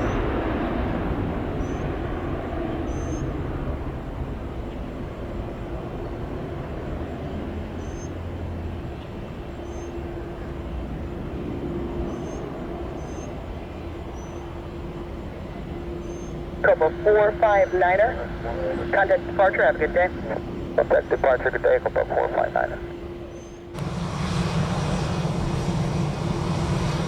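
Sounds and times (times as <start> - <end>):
jet engines droning: 0.0 - 27.0
deep engine rumble: 15.4 - 27.0.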